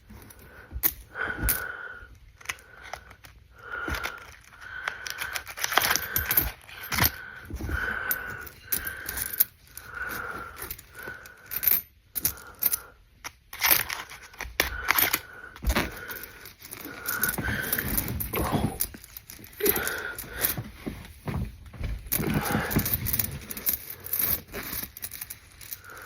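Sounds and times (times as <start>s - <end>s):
coins clinking: 8.0s - 12.8s, 13.5s - 20.7s, 22.1s - 26.0s.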